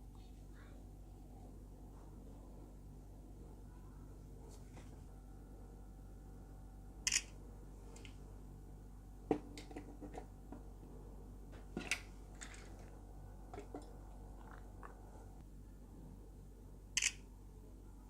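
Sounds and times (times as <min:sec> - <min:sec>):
phone camera shutter sound: 0:07.1 - 0:07.3, 0:17.0 - 0:17.2.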